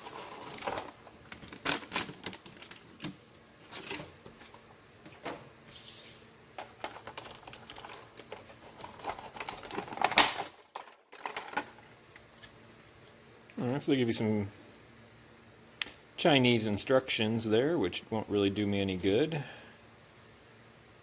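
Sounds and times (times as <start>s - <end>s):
packaging clicks and rustles: 0.0s - 4.0s, 6.6s - 11.8s.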